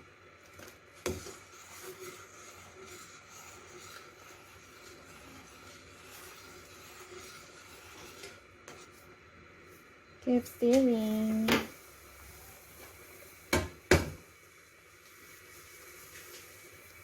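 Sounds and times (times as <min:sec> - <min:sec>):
pot of pasta cooking hiss: 0:00.0 - 0:17.0
light stirring taps: 0:00.4 - 0:09.0.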